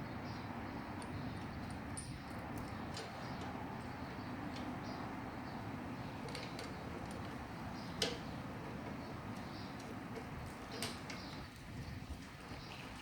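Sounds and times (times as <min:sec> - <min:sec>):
steady background noise: 0:00.0 - 0:13.0
metal parts clicking and tapping: 0:06.2 - 0:08.3, 0:09.4 - 0:11.4.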